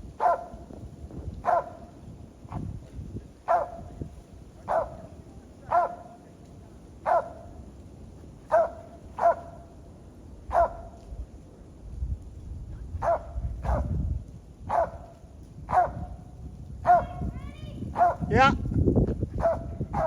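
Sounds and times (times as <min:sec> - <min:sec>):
dog barking: 0:00.2 - 0:00.7, 0:01.4 - 0:01.9, 0:03.4 - 0:04.0, 0:04.6 - 0:06.2, 0:07.0 - 0:07.6, 0:08.5 - 0:09.7, 0:10.5 - 0:11.0, 0:13.0 - 0:14.0, 0:14.7 - 0:15.1, 0:15.7 - 0:16.2, 0:16.8 - 0:17.3, 0:17.9 - 0:18.4, 0:19.4 - 0:20.0.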